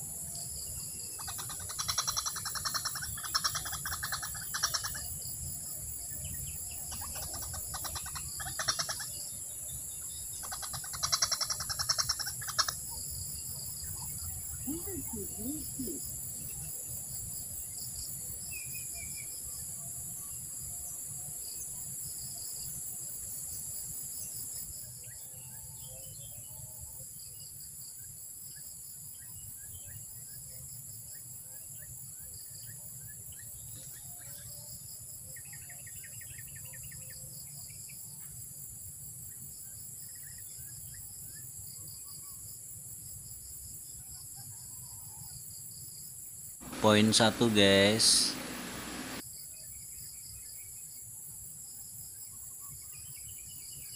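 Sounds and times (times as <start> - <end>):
faint bird chirps: 0.0 - 17.0
crickets and insects chirping: 0.0 - 53.9.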